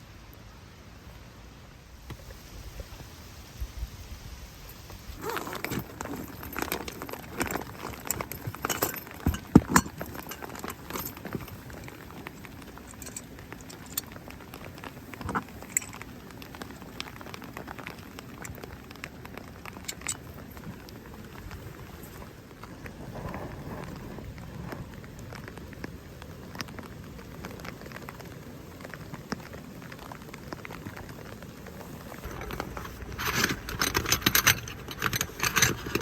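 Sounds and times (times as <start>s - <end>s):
rain patter: 0.0s - 36.0s
scattered clicks and knocks: 5.4s - 16.6s, 32.2s - 36.0s.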